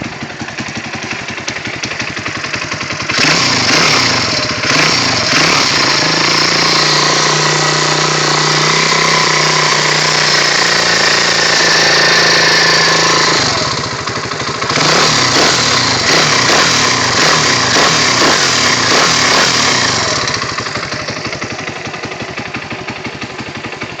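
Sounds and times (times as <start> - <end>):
motorbike engine running: 0.0 - 24.0.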